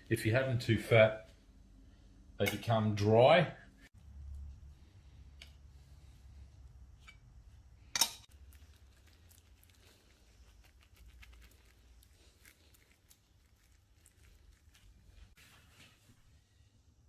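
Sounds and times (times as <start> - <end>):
hands squishing and patting mince: 8.2 - 16.4.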